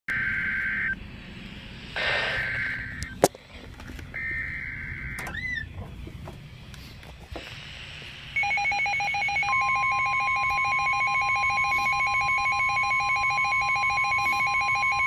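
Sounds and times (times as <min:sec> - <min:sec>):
buzzy digital data tones: 0:01.6 - 0:03.2.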